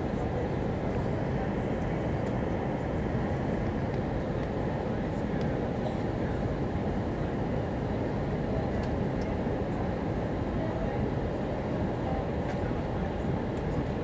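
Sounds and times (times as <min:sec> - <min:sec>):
airplane cabin rumble: 0:00.0 - 0:14.0.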